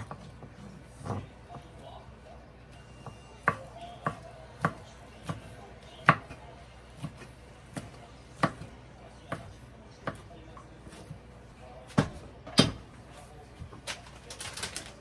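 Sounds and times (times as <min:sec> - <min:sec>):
knife chopping on cutting board: 0:03.0 - 0:11.2, 0:11.9 - 0:12.9.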